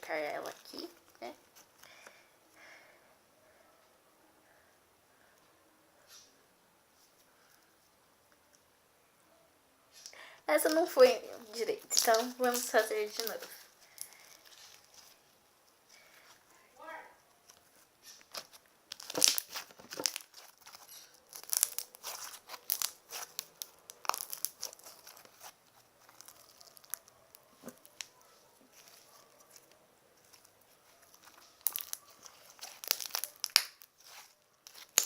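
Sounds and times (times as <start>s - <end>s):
slime crackling and popping: 10.6s - 15.2s, 18.0s - 35.0s.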